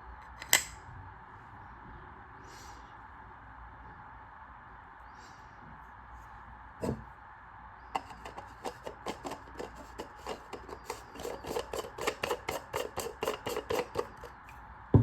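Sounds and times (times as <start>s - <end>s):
rapid rubbing scraping strokes: 8.0s - 14.5s.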